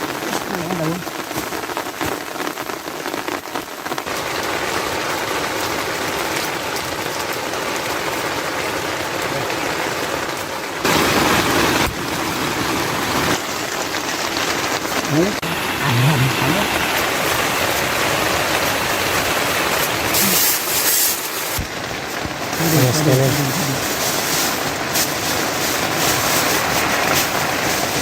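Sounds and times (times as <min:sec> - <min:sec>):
heavy rain falling: 0:00.0 - 0:28.0.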